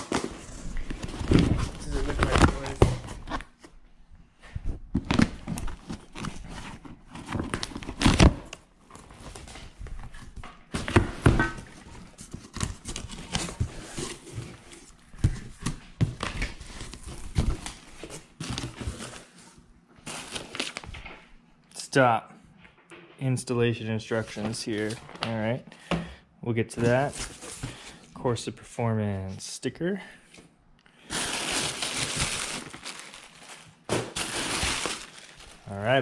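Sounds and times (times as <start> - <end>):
packing material crinkling and tearing: 0.0 - 3.5, 5.0 - 9.6, 20.0 - 21.0, 31.0 - 36.0.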